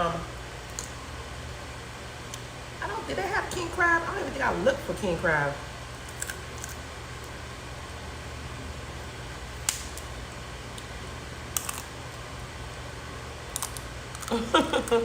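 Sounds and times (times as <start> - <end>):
steady low hum: 0.0 - 15.0
crab shells cracking: 6.0 - 7.4, 11.5 - 12.8, 13.4 - 14.4.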